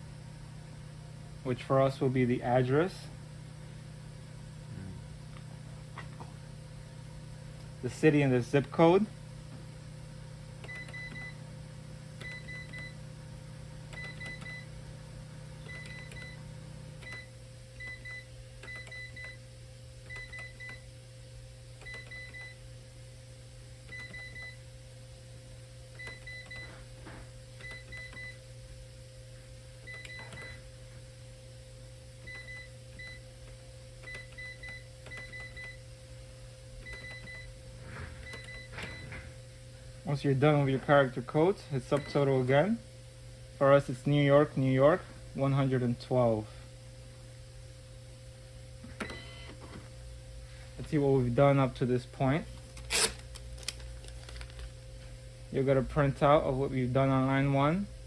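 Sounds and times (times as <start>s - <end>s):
cash register keypad beeping: 10.6s - 11.4s, 12.2s - 13.0s, 13.9s - 14.7s, 15.6s - 16.4s, 29.9s - 30.6s, 36.9s - 37.5s, 38.2s - 39.2s, 49.0s - 49.6s.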